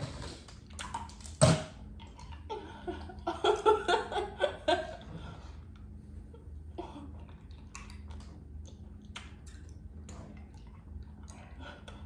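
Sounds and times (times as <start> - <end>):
clicks and crackles of eating: 0.0 - 3.3, 7.1 - 12.0
low steady hum: 0.0 - 12.0.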